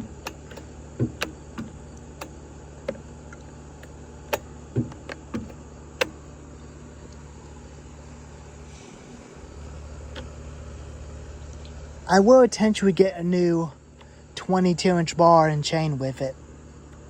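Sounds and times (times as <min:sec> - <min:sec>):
clicks and knocks of handling: 0:00.0 - 0:06.2
steady low hum: 0:00.0 - 0:17.0.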